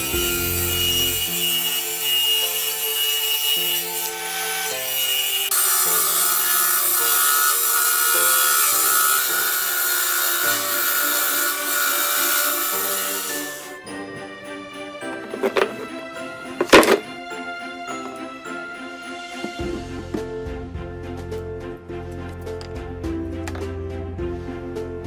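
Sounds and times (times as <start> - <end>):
tool rasping wood: 0.0 - 13.9
instrumental music: 0.0 - 25.0.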